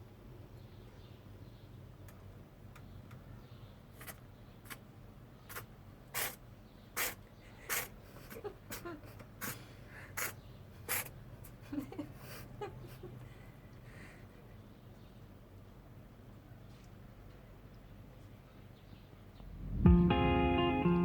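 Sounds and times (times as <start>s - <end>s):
kitten sneezing: 4.0s - 4.8s, 5.5s - 6.4s, 7.0s - 11.2s.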